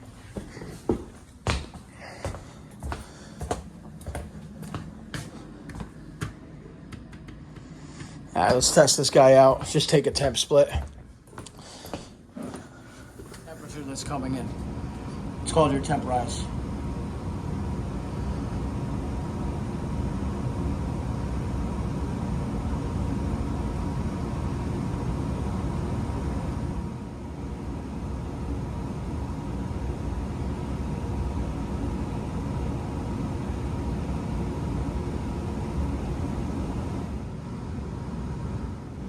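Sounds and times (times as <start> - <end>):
furnace blower rushing air: 0.0 - 27.2.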